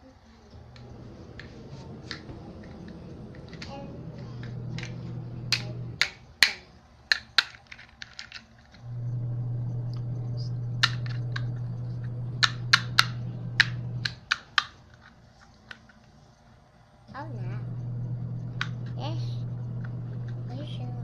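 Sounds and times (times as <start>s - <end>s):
small motor humming: 0.5s - 6.2s, 8.8s - 14.2s, 17.1s - 21.0s
plastic toy pieces clicking: 6.0s - 8.8s.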